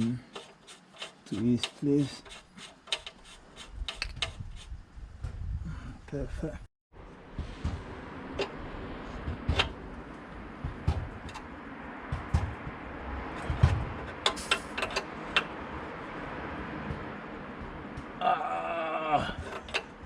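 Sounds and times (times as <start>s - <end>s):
tools clicking and knocking: 0.2s - 4.4s, 9.3s - 9.8s, 10.6s - 11.5s, 13.3s - 15.6s, 19.4s - 20.0s.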